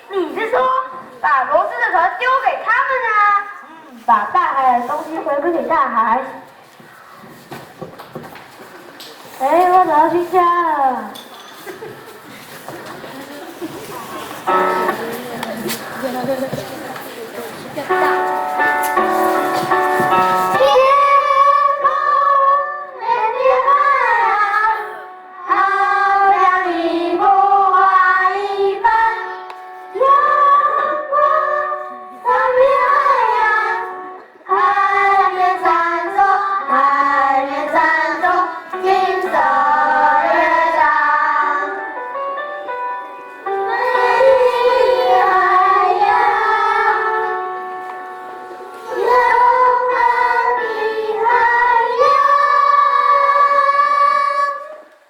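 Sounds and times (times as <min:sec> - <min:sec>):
instrumental accompaniment: 0:14.4 - 0:16.0, 0:17.7 - 0:22.1, 0:22.7 - 0:53.4
children singing: 0:18.0 - 0:42.0, 0:43.5 - 0:54.9.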